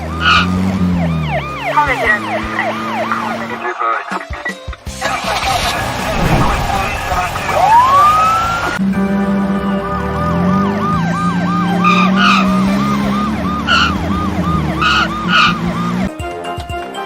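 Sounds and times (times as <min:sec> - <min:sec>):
siren wailing: 0:00.0 - 0:03.6, 0:09.8 - 0:16.1
short bright blasts: 0:06.1 - 0:07.3.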